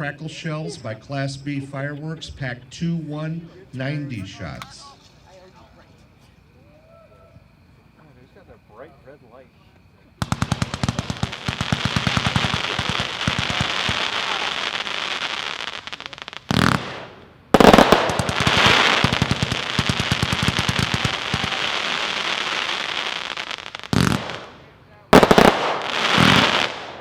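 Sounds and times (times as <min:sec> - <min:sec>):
fireworks crackling: 0:00.0 - 0:06.3, 0:10.1 - 0:27.0
loud fireworks burst: 0:10.2 - 0:27.0.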